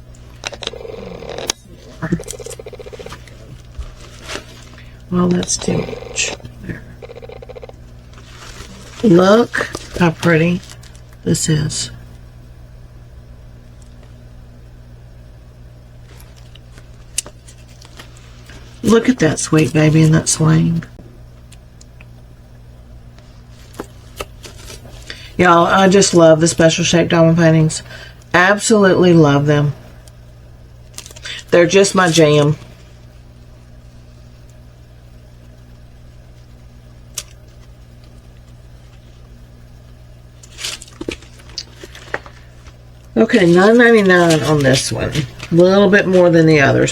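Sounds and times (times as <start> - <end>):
low machine hum: 0.0 - 46.9
packaging rustle: 2.3 - 5.0, 8.0 - 11.1, 40.4 - 45.6.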